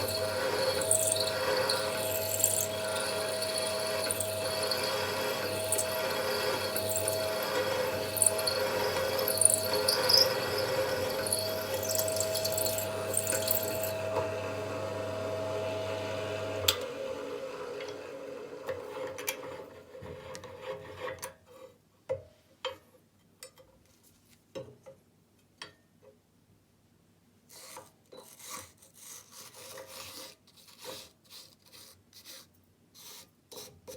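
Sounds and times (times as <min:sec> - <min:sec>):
metal being handled: 0:00.0 - 0:14.0
electric drill drilling metal: 0:00.0 - 0:14.2.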